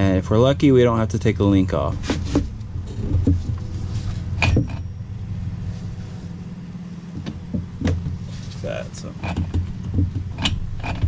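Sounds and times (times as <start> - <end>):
steady low hum: 0.0 - 11.0
metal parts knocking and clinking: 4.3 - 4.9.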